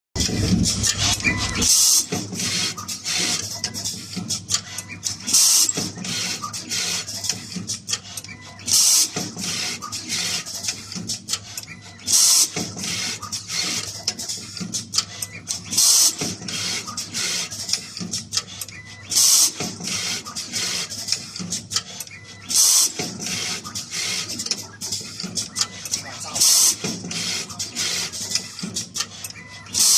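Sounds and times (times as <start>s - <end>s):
rapid machine clicking: 0.2s - 29.9s
machine air hiss: 26.3s - 26.8s.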